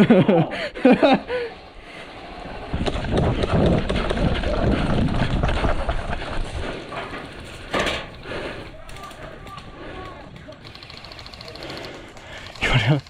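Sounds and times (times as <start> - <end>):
microphone movement rumble: 2.5 - 7.8
running footfalls: 2.8 - 10.0.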